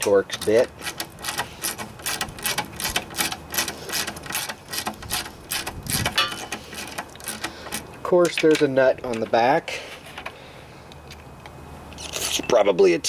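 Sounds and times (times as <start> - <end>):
ratchet driver clicking: 0.0 - 9.3.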